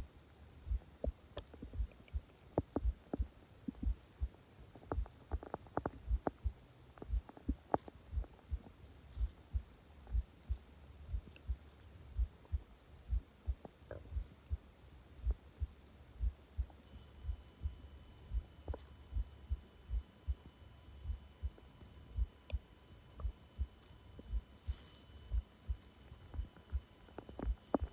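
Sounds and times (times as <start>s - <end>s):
heartbeat pulse thuds: 0.6s - 27.9s
stomach gurgles: 0.8s - 9.4s.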